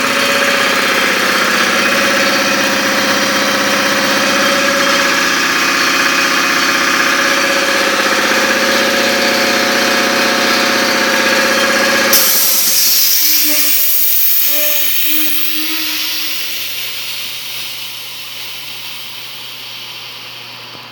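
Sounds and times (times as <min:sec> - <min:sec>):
machine motor running: 0:00.0 - 0:20.9
hiss: 0:12.1 - 0:20.8.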